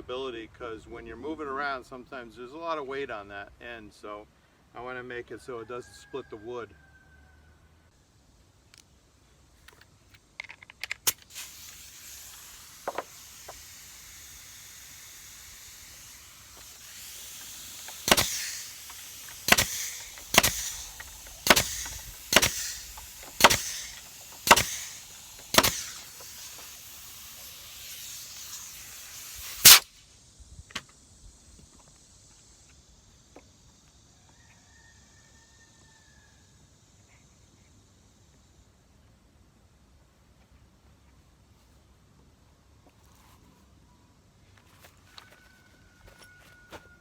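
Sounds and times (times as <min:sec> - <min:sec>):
steady hiss: 0:07.9 - 0:47.0
hammer striking nails: 0:17.8 - 0:26.0.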